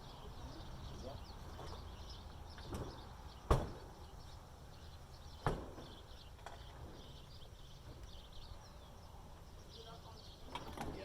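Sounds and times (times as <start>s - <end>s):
birds chirping: 0.0s - 11.0s
sharp knocks: 2.7s - 3.9s, 5.4s - 6.0s.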